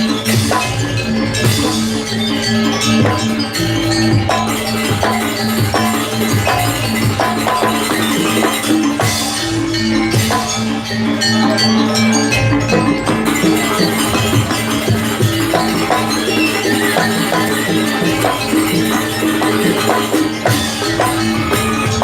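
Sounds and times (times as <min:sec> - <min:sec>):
gamelan metallic percussion: 0:00.0 - 0:22.0
sustained low ringing tones: 0:00.0 - 0:22.0.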